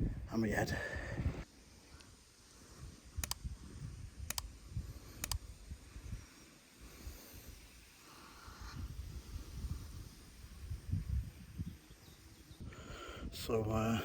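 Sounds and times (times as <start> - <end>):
sharp clicks: 3.2 - 3.5, 4.2 - 4.5, 5.2 - 5.5.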